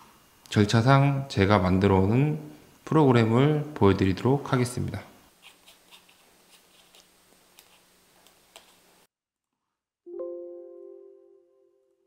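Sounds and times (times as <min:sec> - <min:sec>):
room hiss: 0:00.0 - 0:09.1
ringing musical tone: 0:10.1 - 0:12.0.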